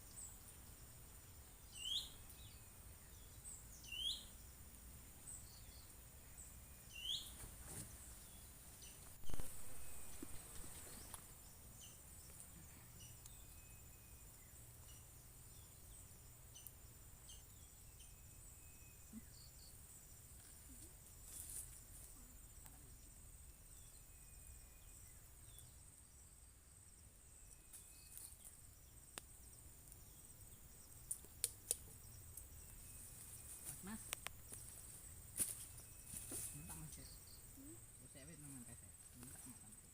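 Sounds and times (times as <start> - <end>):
crickets droning: 0.0 - 39.9
faint ticks: 27.7 - 30.0, 34.0 - 34.7.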